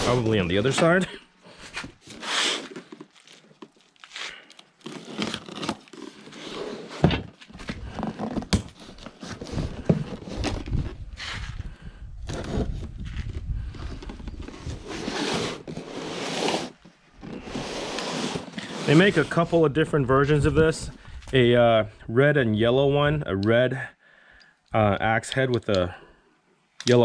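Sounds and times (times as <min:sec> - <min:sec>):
cardboard box scraping and tearing: 0:00.0 - 0:01.1, 0:01.7 - 0:03.4, 0:04.8 - 0:11.5, 0:12.2 - 0:13.3, 0:14.0 - 0:19.5.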